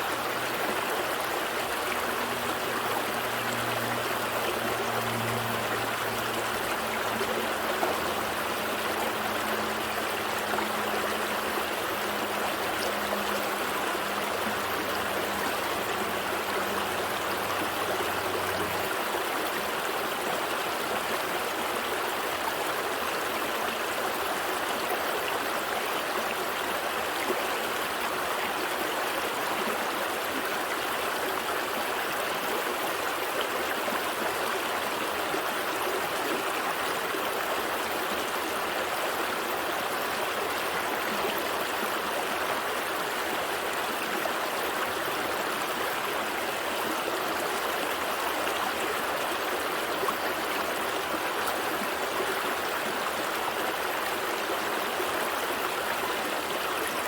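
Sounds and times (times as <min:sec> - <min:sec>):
gentle stream flowing: 0:00.0 - 0:57.0.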